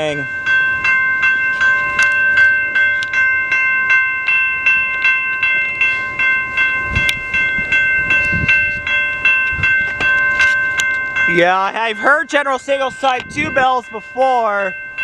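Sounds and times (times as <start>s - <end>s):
railroad crossing bell ringing: 0.0s - 15.0s.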